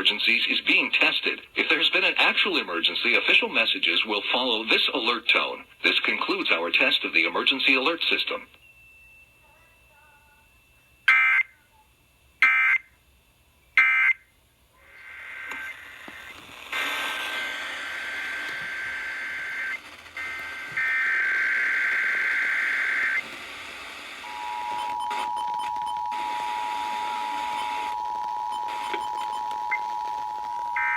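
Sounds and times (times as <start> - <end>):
radio hiss: 0.0 - 8.6, 14.8 - 25.3
screeching data tone bursts: 14.9 - 23.2
two-tone attention signal: 24.2 - 30.9.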